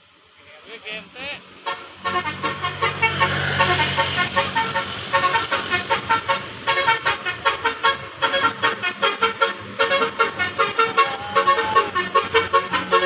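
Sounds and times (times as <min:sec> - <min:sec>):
bus horn playing a fast melody: 0:01.0 - 0:13.0.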